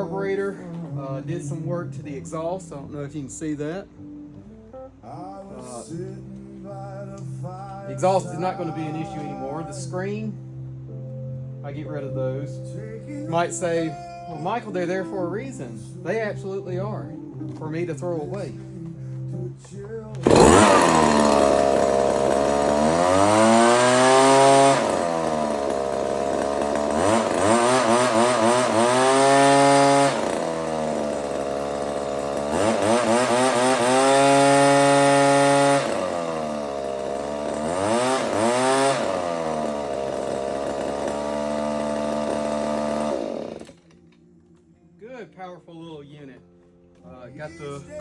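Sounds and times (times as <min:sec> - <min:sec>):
leaf blower engine revving: 0:00.0 - 0:01.5, 0:07.9 - 0:10.3, 0:13.3 - 0:16.6, 0:20.1 - 0:44.0.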